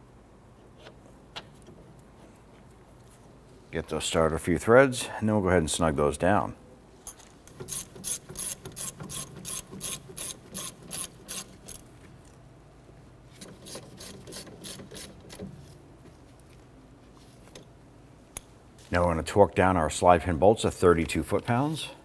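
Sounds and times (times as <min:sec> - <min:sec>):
hand ratchet clicking: 0:07.1 - 0:11.8.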